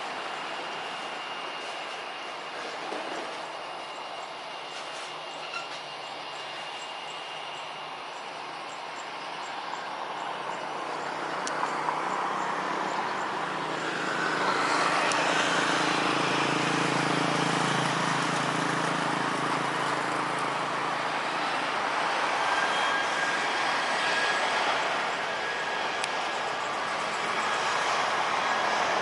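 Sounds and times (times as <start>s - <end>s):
jet engines passing close by: 0.0s - 29.0s.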